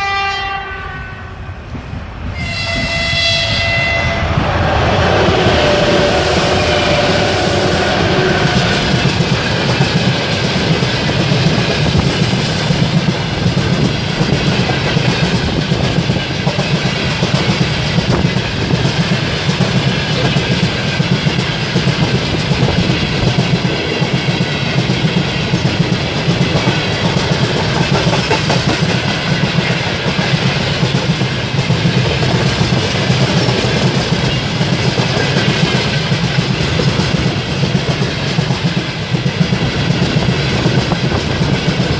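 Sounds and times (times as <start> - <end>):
train wheels clattering on rails: 3.7 - 41.9.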